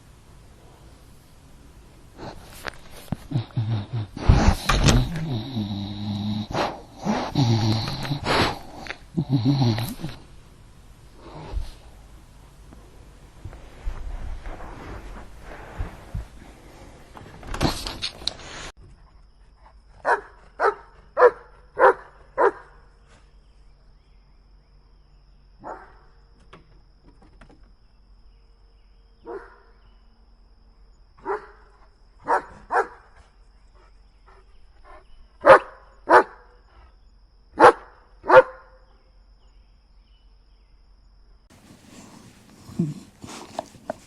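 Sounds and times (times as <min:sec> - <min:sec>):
dog barking: 0:20.0 - 0:22.8, 0:25.6 - 0:26.0, 0:29.2 - 0:29.7, 0:31.2 - 0:33.1, 0:35.4 - 0:36.5, 0:37.6 - 0:38.8.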